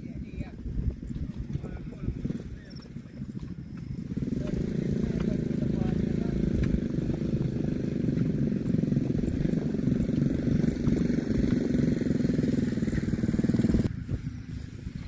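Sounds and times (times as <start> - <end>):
small engine running: 1.8 - 15.0.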